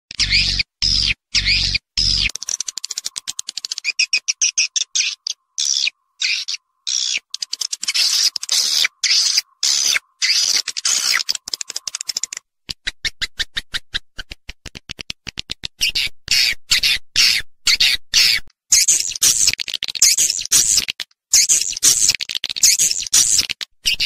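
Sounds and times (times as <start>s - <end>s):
twittering bird chirps: 0.1s - 12.4s, 18.2s - 24.0s
rapid sharp clicks: 2.3s - 4.0s, 7.1s - 8.8s, 9.6s - 12.4s.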